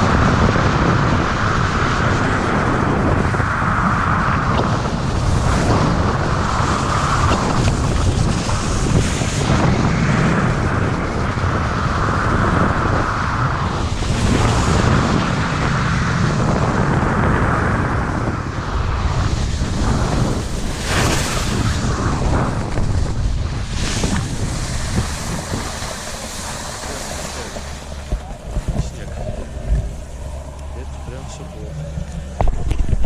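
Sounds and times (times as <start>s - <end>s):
wind rumble on microphone: 0.0s - 33.0s
skis scraping over snow: 19.4s - 30.2s.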